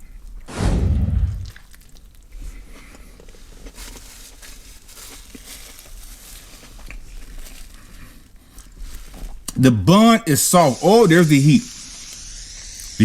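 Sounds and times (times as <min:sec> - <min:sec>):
person chewing sandwich: 0:01.4 - 0:09.6
wrapper crinkling: 0:03.3 - 0:08.0.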